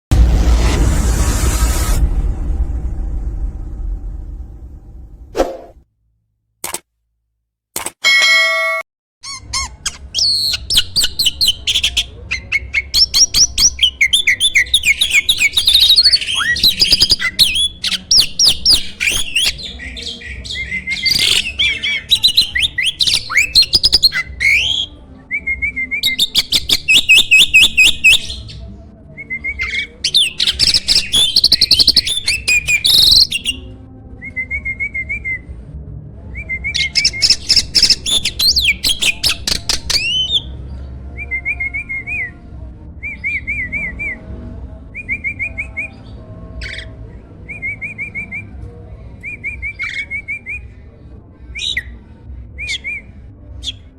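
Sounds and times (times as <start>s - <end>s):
starling singing: 9.2s - 25.0s, 25.8s - 28.6s, 29.2s - 33.7s, 36.6s - 40.5s, 44.9s - 48.5s, 49.2s - 50.7s, 51.5s - 52.0s.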